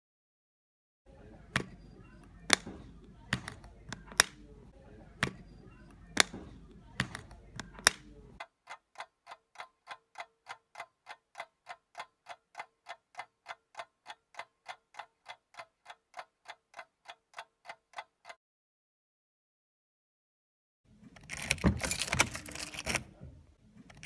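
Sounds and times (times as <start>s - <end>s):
steady clock-like ticking: 6.2s - 18.4s.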